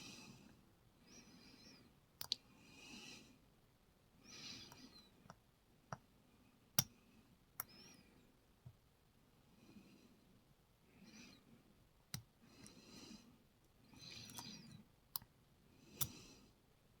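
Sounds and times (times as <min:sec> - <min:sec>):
soft breathy hisses: 0:02.6 - 0:03.4, 0:04.2 - 0:05.0.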